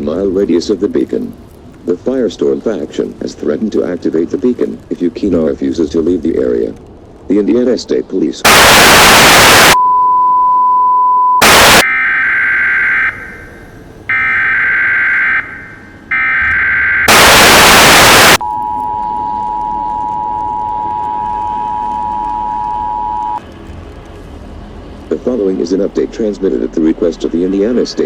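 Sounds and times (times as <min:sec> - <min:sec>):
static bursts: 0:08.4 - 0:09.8, 0:11.4 - 0:18.4
screeching digital data bursts: 0:08.5 - 0:09.8, 0:11.4 - 0:18.4
steady single tone: 0:09.2 - 0:23.4
two-tone attention signal: 0:09.5 - 0:23.4.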